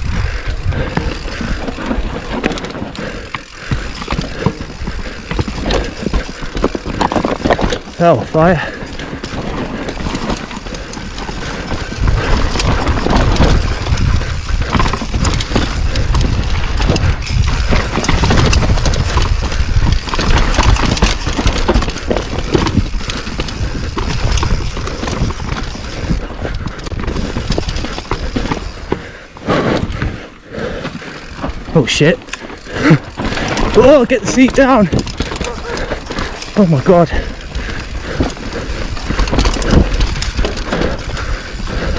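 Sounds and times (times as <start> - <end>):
wind rumble on microphone: 0.0 - 7.9, 8.8 - 30.2, 37.2 - 41.9
bike rattling and clattering: 0.0 - 41.9
bike tyres hammering over rough trail: 0.0 - 41.9.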